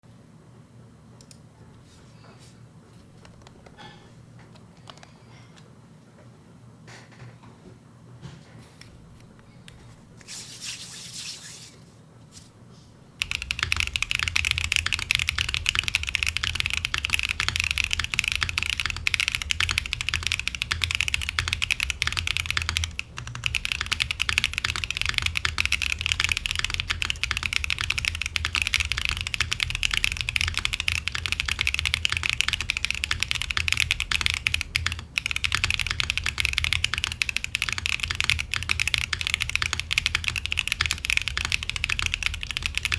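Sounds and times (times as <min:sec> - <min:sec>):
mechanical keyboard typing: 0:13.2 - 0:42.9.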